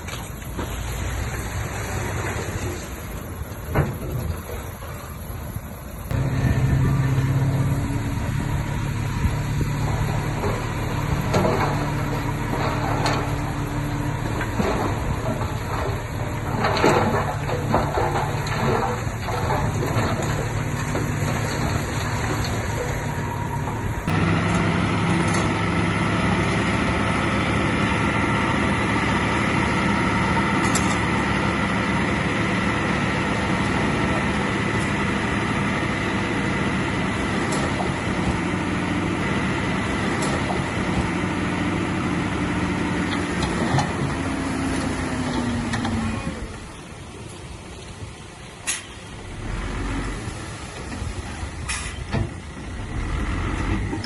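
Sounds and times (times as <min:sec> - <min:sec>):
heavy machinery diesel engine: 0:00.0 - 0:54.0.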